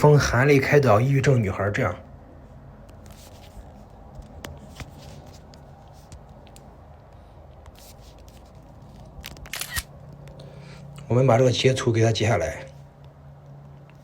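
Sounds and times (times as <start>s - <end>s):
faint clicks and taps: 2.8s - 9.0s.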